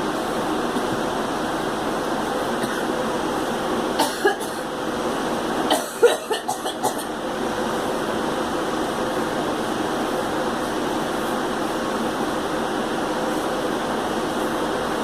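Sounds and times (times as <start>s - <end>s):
girl coughing: 2.6s - 2.9s, 4.0s - 4.6s, 5.7s - 7.1s.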